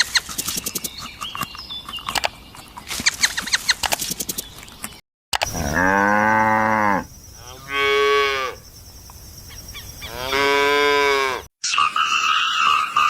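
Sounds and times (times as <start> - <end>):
cow mooing: 5.5 - 8.6, 10.1 - 11.5.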